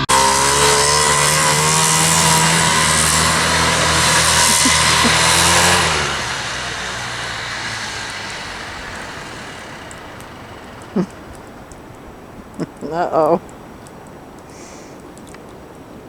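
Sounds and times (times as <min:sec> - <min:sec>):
snowmobile two-stroke engine running: 0:00.0 - 0:12.4.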